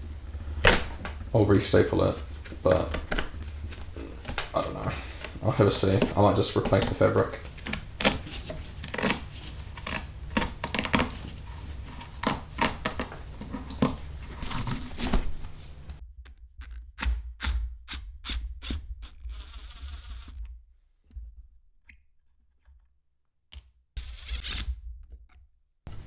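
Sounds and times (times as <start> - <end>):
fabric scratching and tearing: 0.0 - 16.0.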